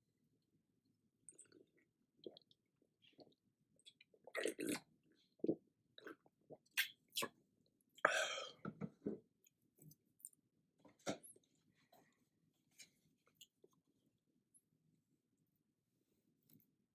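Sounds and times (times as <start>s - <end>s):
wet mouth noises: 3.9s - 7.4s.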